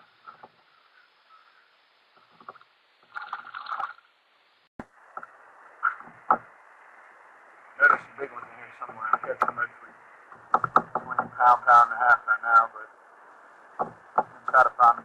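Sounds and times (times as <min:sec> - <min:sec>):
water sounds: 0:00.0 - 0:15.0
muffled knocks and clatter: 0:10.3 - 0:11.4, 0:13.7 - 0:14.6.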